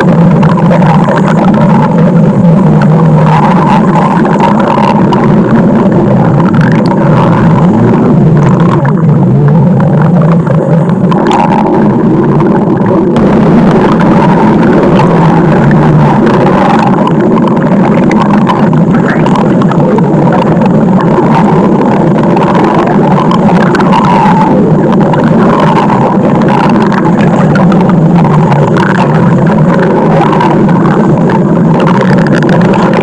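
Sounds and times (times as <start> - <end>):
stomach growling: 0.0 - 33.0.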